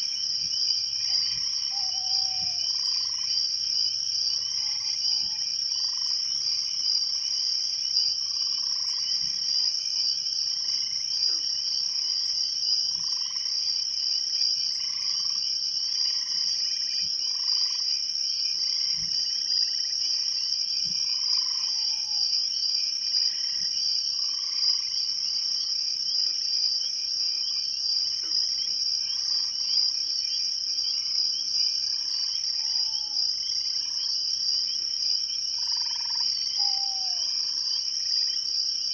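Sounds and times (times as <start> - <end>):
crickets trilling: 0.0 - 38.9
frogs calling: 0.2 - 6.7, 20.8 - 22.3, 27.4 - 38.6.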